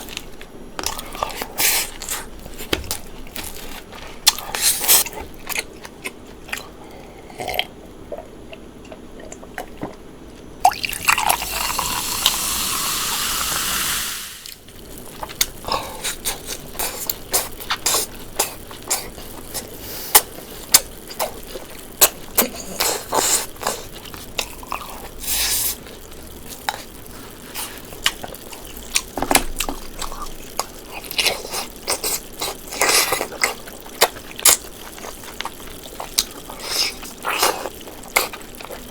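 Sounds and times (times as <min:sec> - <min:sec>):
drink pouring into glass: 0:10.6 - 0:14.6
wet chewing and lip-smacking: 0:15.2 - 0:38.9.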